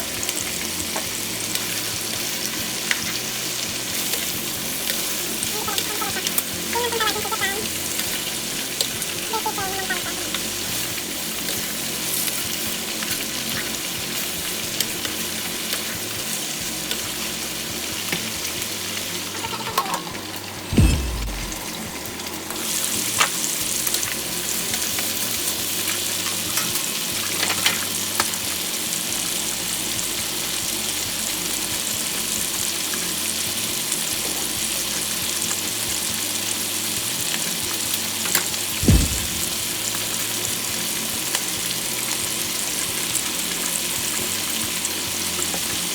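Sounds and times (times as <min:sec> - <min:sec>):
food sizzling in a pan: 0:00.0 - 0:45.9
short low thumps: 0:20.7 - 0:21.8, 0:38.8 - 0:39.8.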